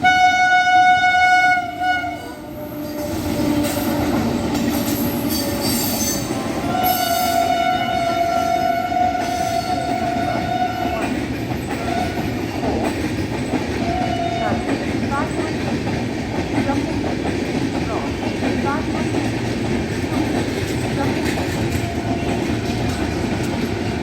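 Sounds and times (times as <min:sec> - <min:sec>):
locomotive horn blast: 0:00.0 - 0:03.9, 0:05.3 - 0:11.2, 0:13.8 - 0:15.4, 0:21.0 - 0:23.2
train wheels rumbling on rails: 0:00.0 - 0:24.0.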